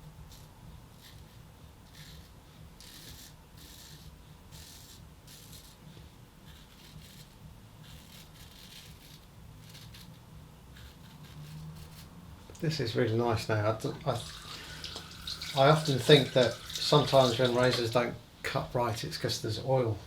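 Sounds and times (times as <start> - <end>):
straight razor scraping stubble: 0.3 - 12.2.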